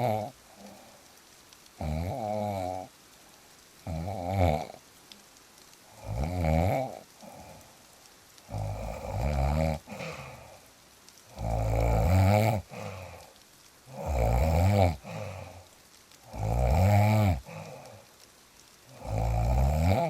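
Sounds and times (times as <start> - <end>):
loud low snores: 0.0 - 0.8, 1.8 - 2.9, 3.8 - 4.8, 5.9 - 7.7, 8.5 - 10.6, 11.3 - 13.3, 13.9 - 18.1, 18.9 - 20.0
soft breath out: 0.0 - 1.4, 6.9 - 18.2.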